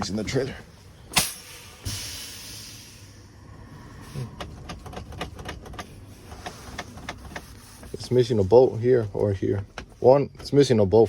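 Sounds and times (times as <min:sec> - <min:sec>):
air rushing out: 0:01.0 - 0:04.4.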